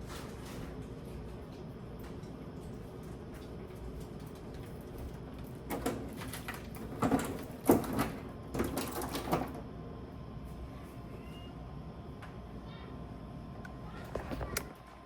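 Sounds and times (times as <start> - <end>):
containers and shelves clattering: 5.6 - 9.6.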